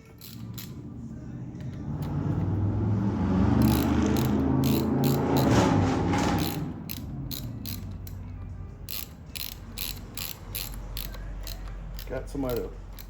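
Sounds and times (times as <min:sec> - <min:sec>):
hand ratchet clicking: 0:00.0 - 0:00.9, 0:03.6 - 0:13.0
low vehicle rumble: 0:00.0 - 0:12.0.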